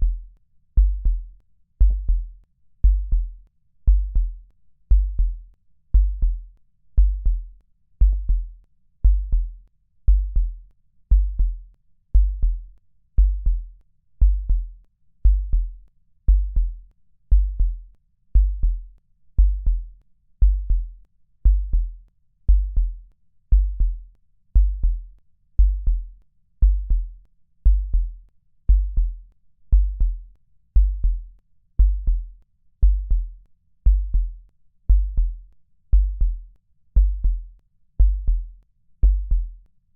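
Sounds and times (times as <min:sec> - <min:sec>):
electronic kick drum thumps: 0:00.8 - 0:39.6.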